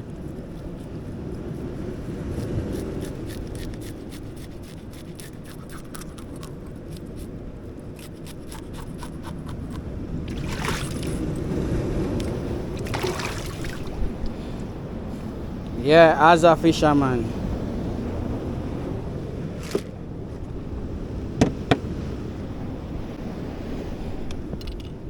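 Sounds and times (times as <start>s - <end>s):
wind rumble on microphone: 0.0s - 16.2s, 16.8s - 25.0s
water washing over rocks: 8.0s - 14.1s.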